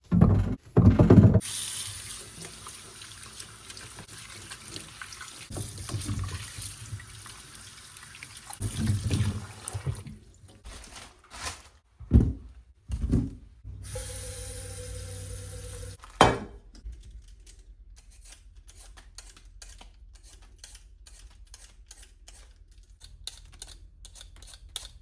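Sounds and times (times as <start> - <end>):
tap water running into sink: 1.4 - 10.4, 13.8 - 16.0.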